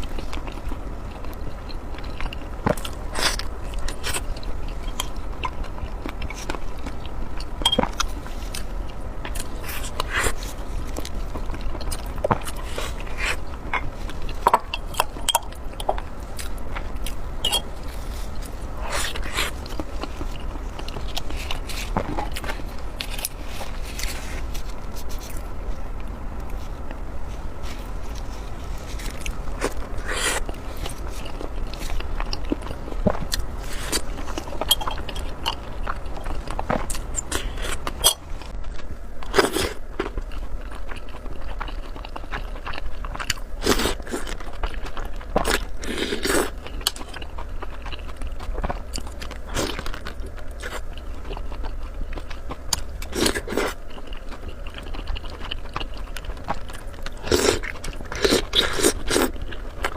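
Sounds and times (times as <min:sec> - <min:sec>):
person chewing food: 0:00.0 - 0:59.9.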